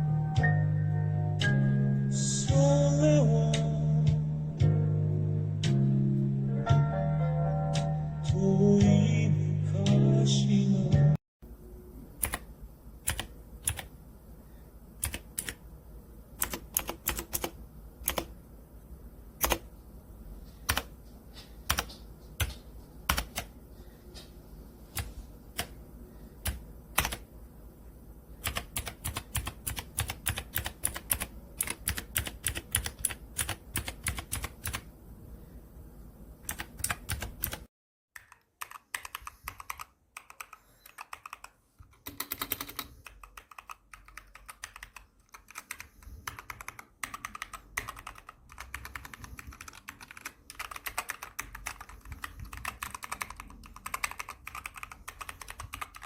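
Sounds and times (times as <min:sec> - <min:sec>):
mechanical keyboard typing: 0:12.2 - 0:13.9, 0:15.0 - 0:15.6, 0:16.4 - 0:18.3, 0:19.4 - 0:19.7, 0:20.6 - 0:20.9, 0:21.7 - 0:23.5, 0:25.0 - 0:25.8, 0:26.4 - 0:27.3, 0:28.4 - 0:34.9, 0:36.4 - 0:56.0.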